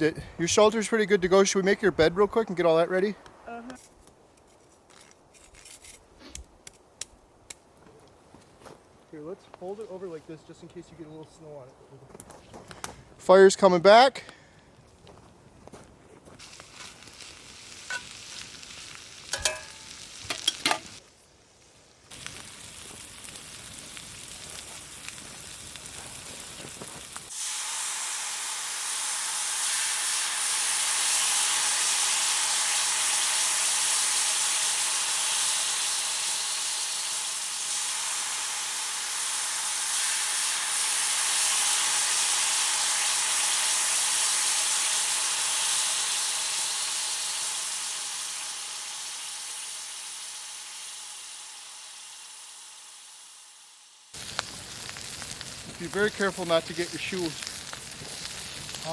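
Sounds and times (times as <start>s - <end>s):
meat sizzling in a skillet: 16.3s - 58.9s.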